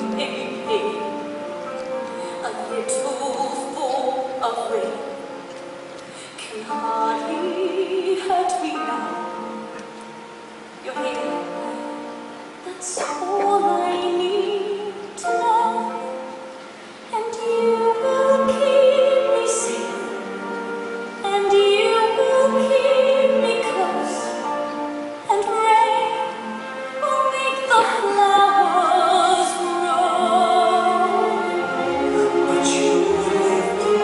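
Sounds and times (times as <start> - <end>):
orchestra playing: 0.0 - 34.0
person singing with vibrato: 10.8 - 34.0.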